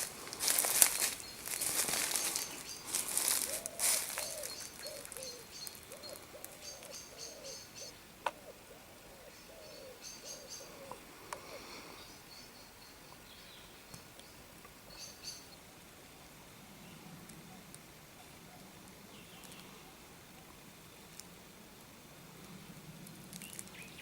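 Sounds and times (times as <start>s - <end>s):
loud rustle: 0.0s - 5.3s
birds chirping and trilling: 0.0s - 15.6s
bird low repeated call: 2.1s - 11.6s.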